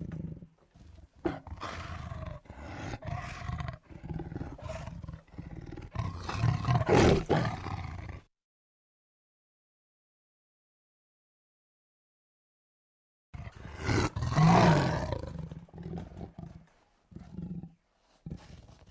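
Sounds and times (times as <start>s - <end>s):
lion roaring and snarling: 1.2s - 8.2s, 13.4s - 18.9s.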